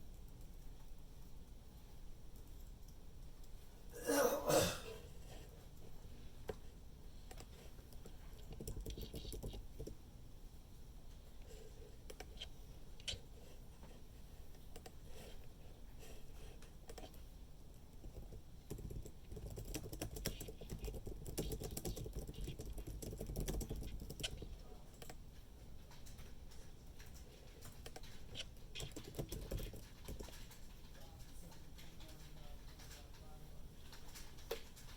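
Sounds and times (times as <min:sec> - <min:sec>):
computer keyboard typing: 0:02.3 - 0:03.6, 0:07.2 - 0:10.0, 0:11.8 - 0:13.2, 0:14.5 - 0:15.3, 0:16.6 - 0:17.2, 0:18.0 - 0:34.9.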